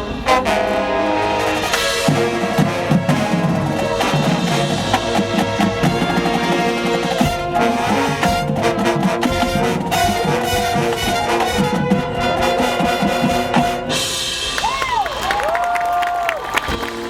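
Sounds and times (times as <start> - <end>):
marching band brass and drums: 0.0 - 17.0
crowd cheering: 14.2 - 17.0
whistles: 14.2 - 17.0.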